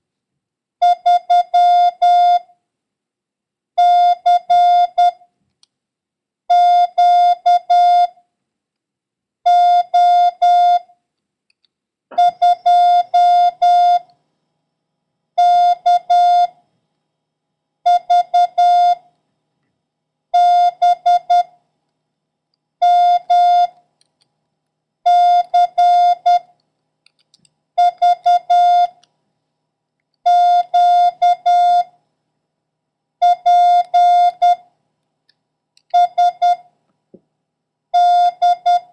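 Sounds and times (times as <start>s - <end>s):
morse code beeps: 12.1s - 14.1s, 25.1s - 26.5s, 27.8s - 29.0s, 30.3s - 31.9s, 33.2s - 34.6s, 35.9s - 36.6s, 38.0s - 38.9s.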